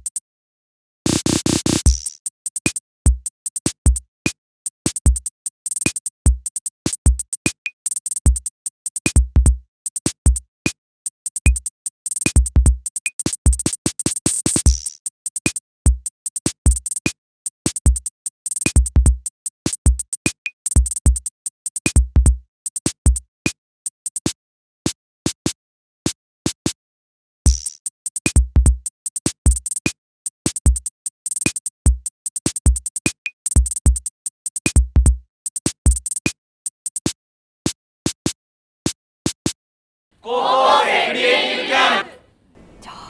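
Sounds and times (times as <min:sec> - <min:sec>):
drum machine beat: 0:01.1 - 0:04.1, 0:04.8 - 0:10.5, 0:11.3 - 0:21.3, 0:31.4 - 0:36.4.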